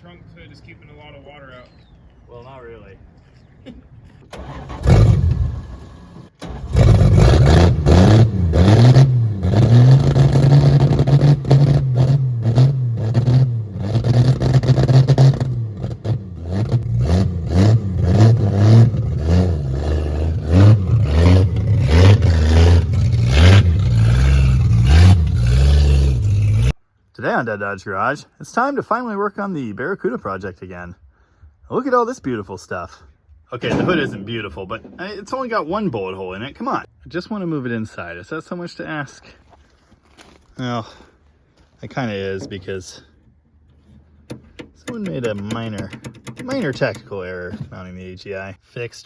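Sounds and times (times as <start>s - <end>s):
car engine revving: 4.4s - 26.8s.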